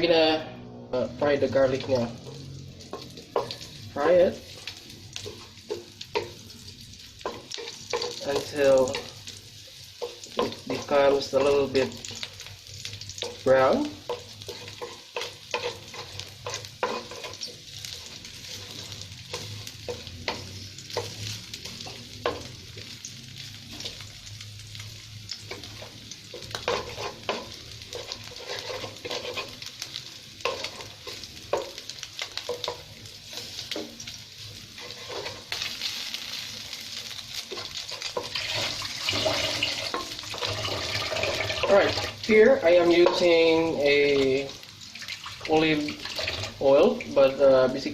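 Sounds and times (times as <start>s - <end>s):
garlic sizzling in oil: 1.0s - 47.9s
utensil scraping pan: 13.2s - 21.2s, 25.5s - 29.7s, 30.4s - 31.7s, 34.6s - 35.7s, 37.5s - 42.2s, 45.9s - 46.6s.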